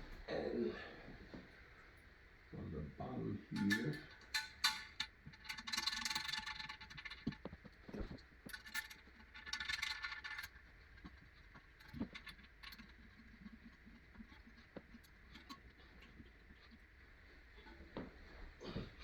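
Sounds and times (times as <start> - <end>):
metal hardware clinking: 3.6 - 6.4.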